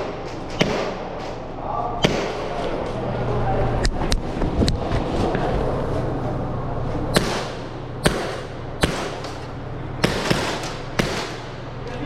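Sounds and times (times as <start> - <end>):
airsoft pistol shots: 0.0 - 1.3, 2.0 - 2.6, 7.2 - 11.8.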